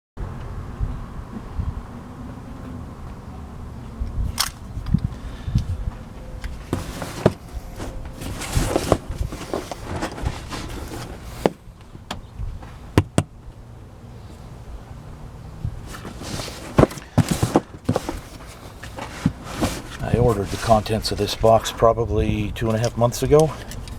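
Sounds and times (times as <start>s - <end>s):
handling knocks and clicks: 4.4s - 5.2s, 6.4s - 13.4s, 15.8s - 21.2s
rustling: 6.4s - 11.9s, 15.7s - 21.6s.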